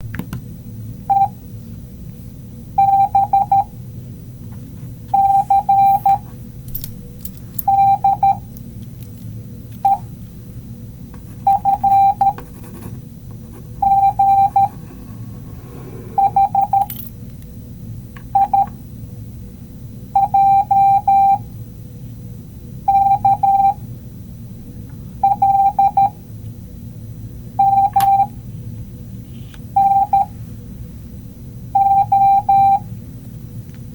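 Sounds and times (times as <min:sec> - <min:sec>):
steady low hum: 0:00.0 - 0:33.9
morse code beeps: 0:01.1 - 0:01.4, 0:02.8 - 0:03.7, 0:05.1 - 0:06.3, 0:07.6 - 0:08.5, 0:09.8 - 0:10.1, 0:11.4 - 0:12.4, 0:13.7 - 0:14.9, 0:16.1 - 0:16.9, 0:18.3 - 0:18.7, 0:20.2 - 0:21.4, 0:22.9 - 0:23.8, 0:25.2 - 0:26.2, 0:27.6 - 0:28.4, 0:29.8 - 0:30.4, 0:31.8 - 0:32.9.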